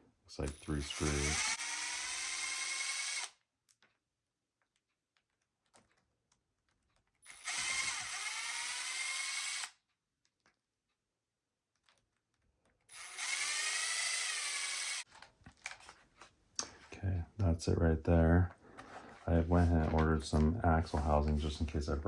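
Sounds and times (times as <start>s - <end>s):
small parts clicking: 0.4s - 11.0s, 11.7s - 16.0s
electric screwdriver whining: 0.6s - 3.4s, 7.3s - 9.8s, 12.9s - 15.1s.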